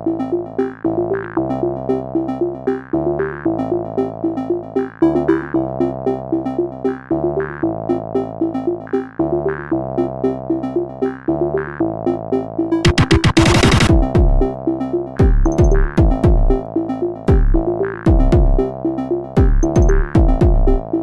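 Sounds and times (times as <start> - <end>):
electronic synthesizer music: 0.0 - 21.0
synthesizer repeating pattern: 12.7 - 21.0.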